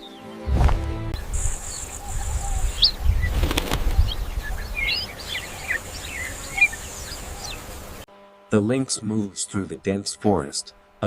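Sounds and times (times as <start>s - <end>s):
small birds chirping: 0.0s - 8.1s
steady high hiss: 1.2s - 10.9s
bird wings flapping: 3.1s - 6.0s.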